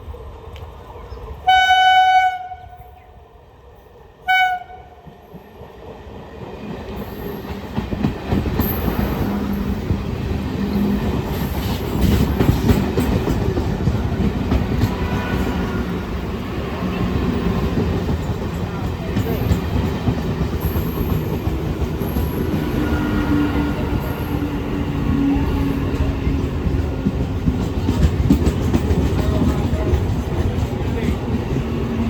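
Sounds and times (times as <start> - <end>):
train rumbling: 0.0 - 32.0
electric train horn: 1.4 - 3.0, 4.2 - 5.0.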